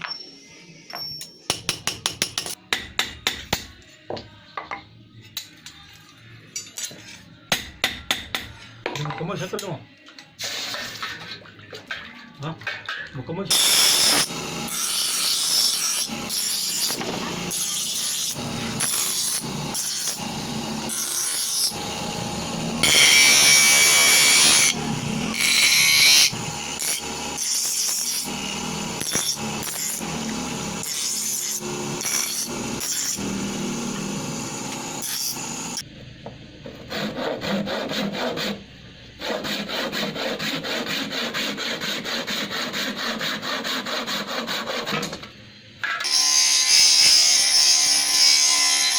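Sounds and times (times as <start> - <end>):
rasping filing strokes: 13.5 - 35.8, 36.9 - 38.6, 39.2 - 45.1
small power tool running: 13.5 - 35.8.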